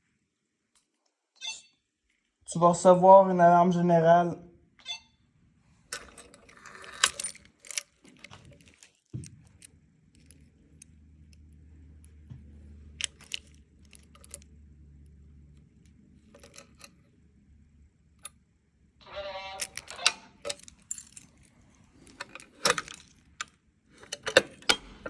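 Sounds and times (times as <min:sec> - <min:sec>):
handling clicks and knocks: 0:05.9 - 0:14.5, 0:16.2 - 0:17.0, 0:19.6 - 0:25.0.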